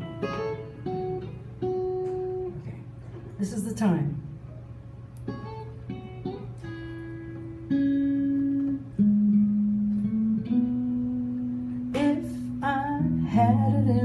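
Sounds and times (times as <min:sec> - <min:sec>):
guitar playing: 0:00.0 - 0:03.3, 0:04.2 - 0:14.0.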